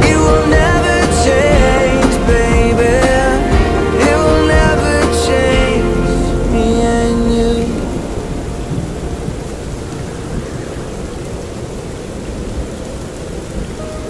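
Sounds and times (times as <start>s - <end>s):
pop song: 0.0s - 8.8s
low rumble: 0.0s - 9.9s
steady rain: 0.0s - 14.0s.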